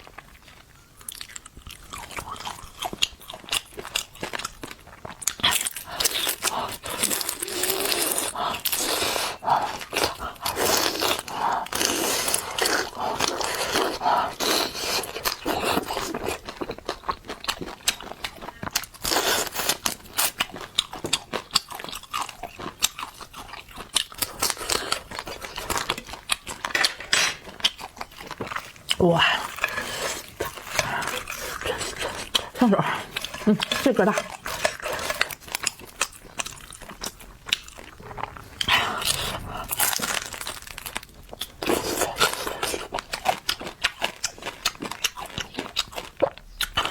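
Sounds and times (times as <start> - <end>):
crunching and chewing crispy fish: 0.0 - 46.9.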